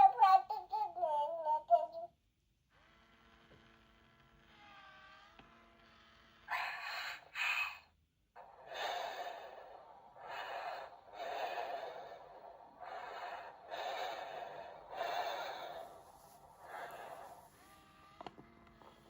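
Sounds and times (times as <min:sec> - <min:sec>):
doll baby breaths: 0:06.5 - 0:18.2.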